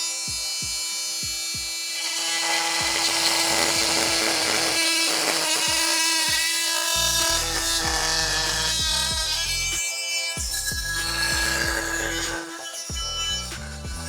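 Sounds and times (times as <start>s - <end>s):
blade sawing into wood: 0.0s - 14.0s
multi-tool high hum: 0.0s - 14.0s.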